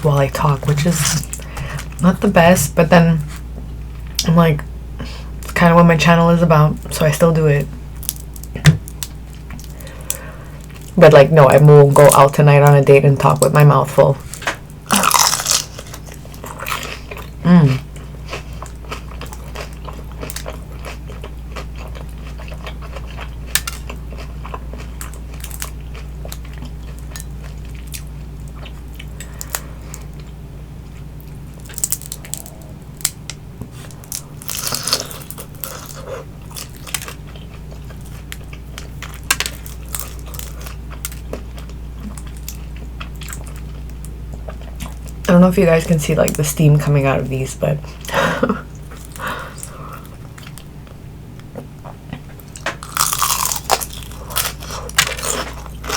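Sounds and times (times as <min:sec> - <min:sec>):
crunchy food chewing: 0:14.2 - 0:45.3, 0:47.8 - 0:55.9.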